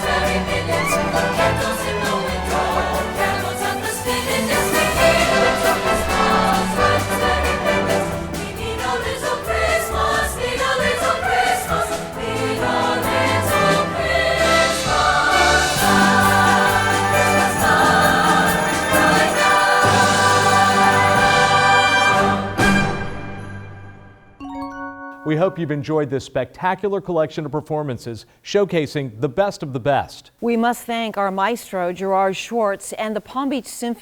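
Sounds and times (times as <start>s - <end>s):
choir singing: 0.0s - 23.0s
symphony orchestra: 0.0s - 24.3s.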